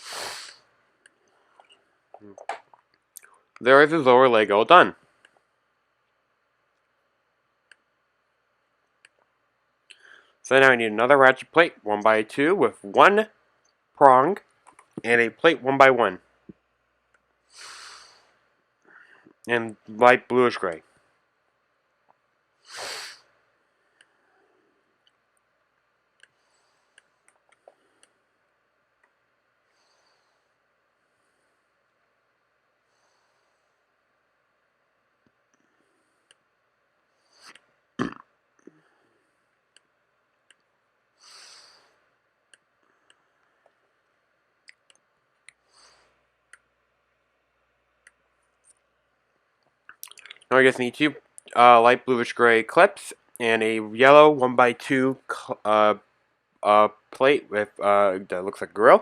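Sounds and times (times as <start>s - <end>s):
soft breaths: 0.0s - 3.6s, 9.9s - 10.4s, 17.4s - 19.5s, 22.1s - 25.3s, 26.0s - 28.6s, 29.5s - 34.4s, 35.4s - 37.9s, 38.6s - 40.0s, 40.6s - 44.2s, 44.9s - 46.8s.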